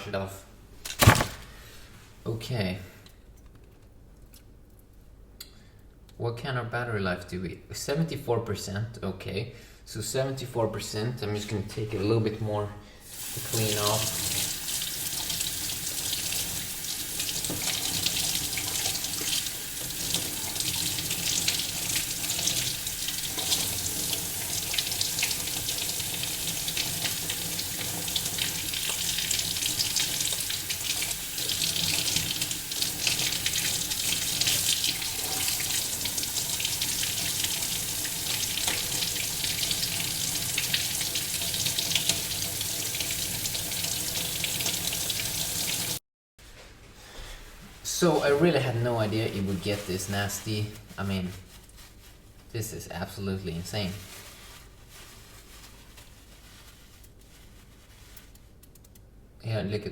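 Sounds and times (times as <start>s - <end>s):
tap water running into sink: 13.1s - 46.0s.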